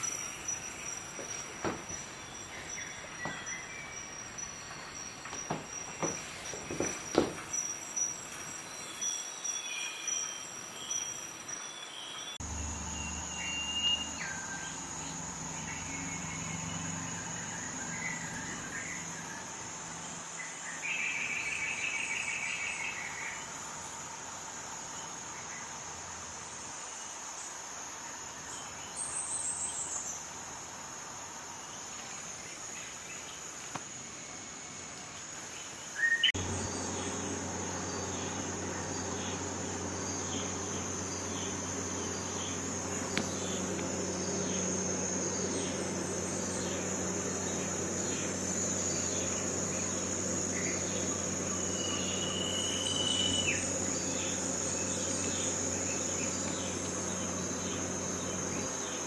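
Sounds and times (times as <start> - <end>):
insects chirping: 0.0 - 59.0
low hum: 36.3 - 59.0.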